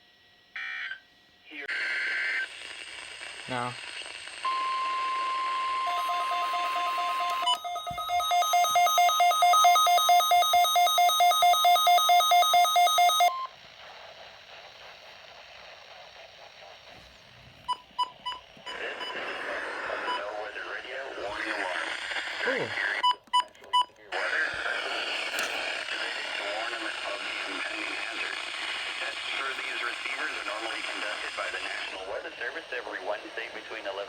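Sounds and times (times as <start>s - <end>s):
short beeps: 4.5s - 13.5s
steady high alarm tone: 4.5s - 13.5s
alert receiver beeping rapidly: 5.8s - 13.4s.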